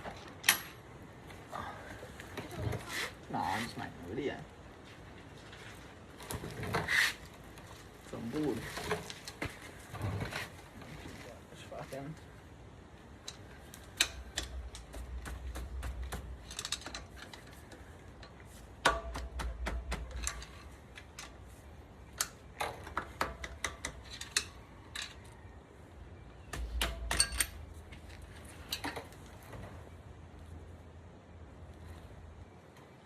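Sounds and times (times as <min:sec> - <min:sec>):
metallic clicks of steel parts: 0:00.0 - 0:00.8, 0:13.1 - 0:25.4, 0:26.4 - 0:29.8
low handling rumbles: 0:13.2 - 0:21.8.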